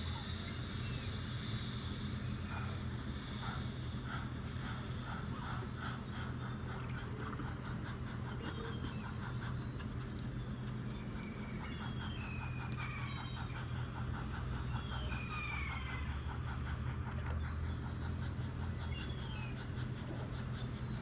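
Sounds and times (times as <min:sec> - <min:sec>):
birds chirping: 0:00.0 - 0:21.0
pulsing low hum: 0:00.0 - 0:21.0.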